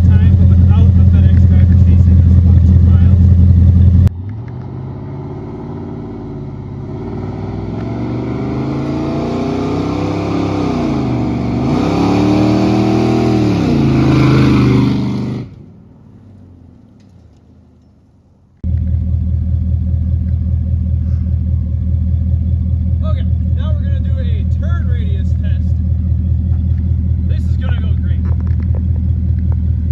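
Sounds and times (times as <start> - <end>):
low rumble: 0.0 - 5.0, 18.5 - 29.9
truck engine accelerating: 0.0 - 17.8, 18.5 - 29.9.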